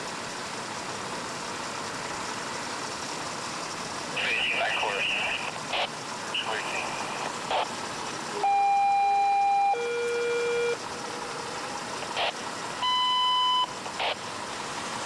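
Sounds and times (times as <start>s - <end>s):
radio alert tones: 4.2s - 7.7s, 8.4s - 10.8s, 12.0s - 14.2s
radio static bursts: 4.2s - 7.7s, 12.0s - 12.4s, 13.8s - 14.2s.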